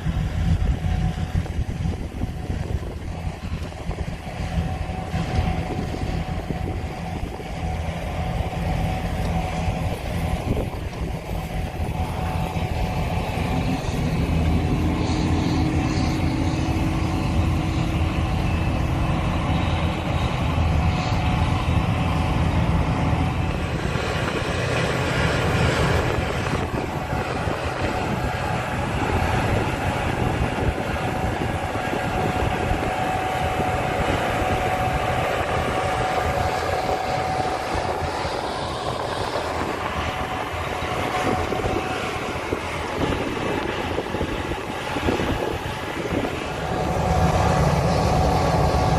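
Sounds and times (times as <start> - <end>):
combine harvester rumbling: 0.0 - 48.9.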